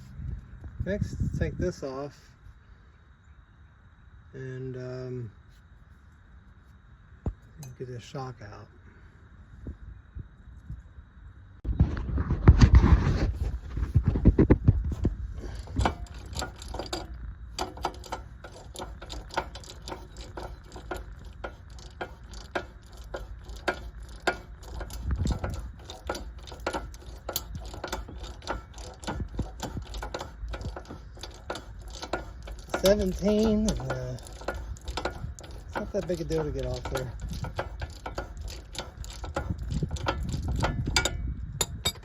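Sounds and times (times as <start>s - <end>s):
clunking handling noise: 12.6s - 42.0s
ratchet wrench clicking: 15.4s - 42.0s.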